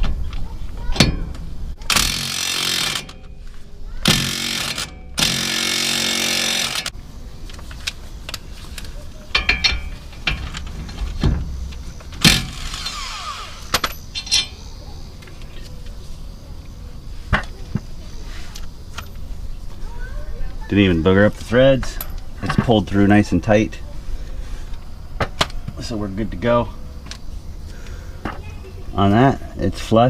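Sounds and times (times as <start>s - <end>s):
impact wrench bursts: 1.8s - 3.3s, 4.0s - 7.0s, 12.2s - 14.6s
metal tools clinking: 7.8s - 13.0s, 13.6s - 15.8s.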